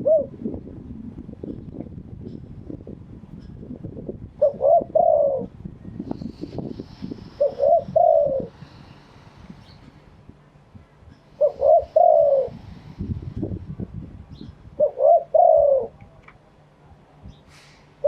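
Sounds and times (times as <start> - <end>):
dove cooing: 0.0 - 0.4, 4.4 - 5.6, 7.3 - 8.6, 11.3 - 12.7, 14.8 - 16.0.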